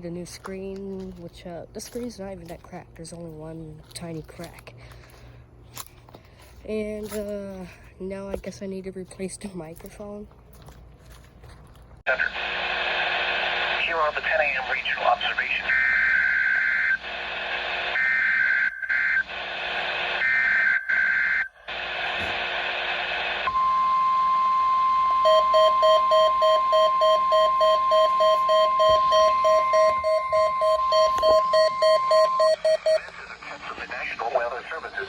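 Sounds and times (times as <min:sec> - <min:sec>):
steady warning tone: 0:13.5 - 0:35.0
low rapid pulsing beep: 0:23.5 - 0:33.0
warbling data tone bursts: 0:23.5 - 0:33.0.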